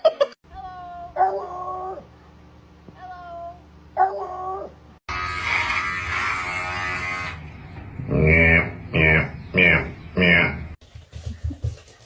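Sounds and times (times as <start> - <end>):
loud buzzing noise: 5.1 - 8.9.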